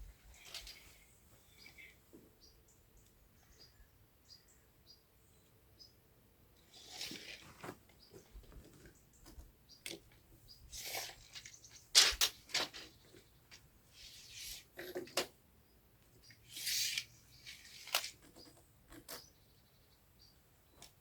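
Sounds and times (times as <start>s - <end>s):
timber scraping: 6.7s - 8.9s.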